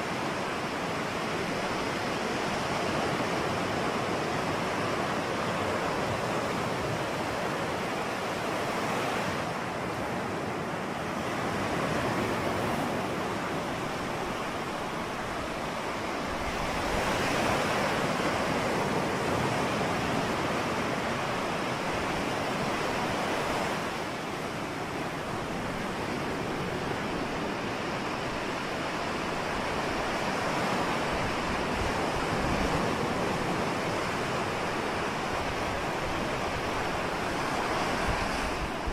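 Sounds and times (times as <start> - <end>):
waves breaking: 0.0 - 38.9.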